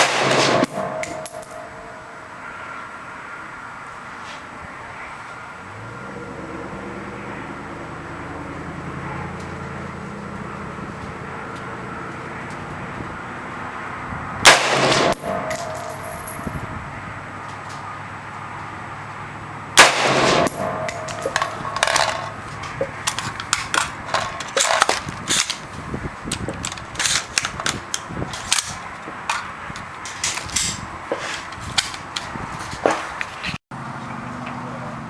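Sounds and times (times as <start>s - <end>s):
rifle shot: 0.0s - 1.6s, 14.5s - 16.5s, 19.8s - 21.7s.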